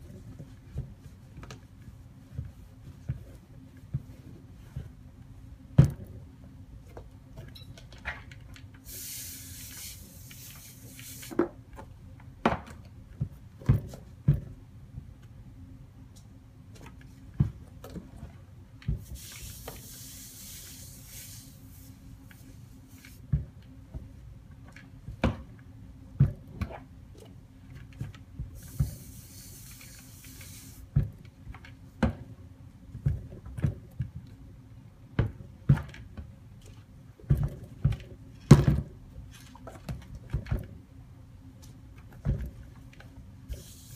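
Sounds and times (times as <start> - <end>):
steam hissing from iron: 8.8 - 11.4, 19.1 - 22.0, 28.6 - 30.8, 43.5 - 43.9.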